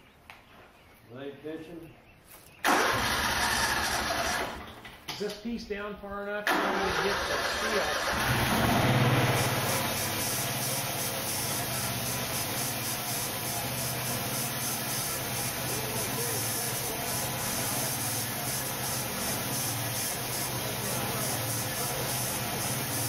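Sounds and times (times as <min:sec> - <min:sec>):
saw blade hissing: 0:07.4 - 0:23.0.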